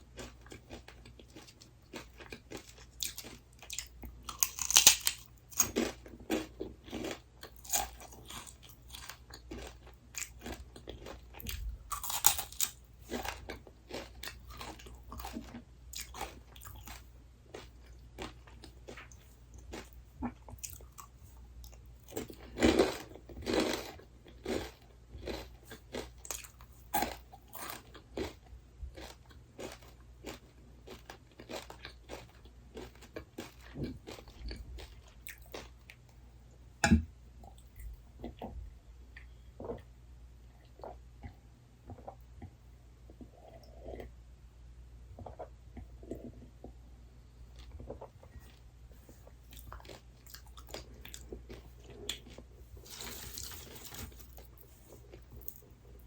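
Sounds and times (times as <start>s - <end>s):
person crunching snack food: 0.2s - 35.8s, 49.5s - 55.8s.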